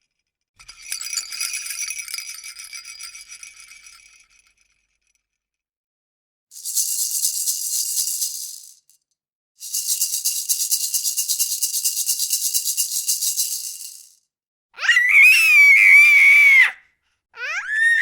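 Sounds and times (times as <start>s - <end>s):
toy rattle shaking: 0.6s - 4.3s, 6.5s - 14.2s.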